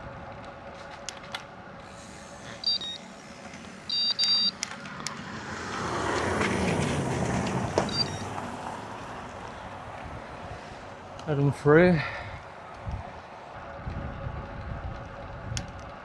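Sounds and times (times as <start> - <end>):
car passing close: 0.8 - 13.8
electronic beeps: 2.5 - 3.2, 3.8 - 4.6, 7.9 - 8.4.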